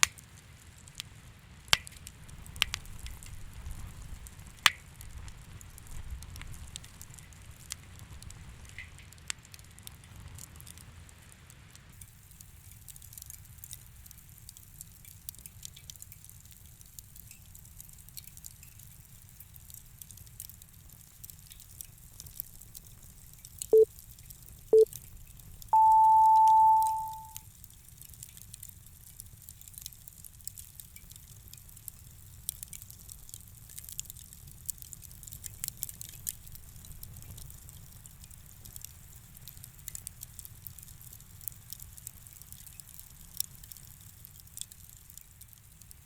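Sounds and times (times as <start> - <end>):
campfire crackling: 0.1 - 24.4, 26.9 - 46.0
timer beeps: 25.8 - 27.4.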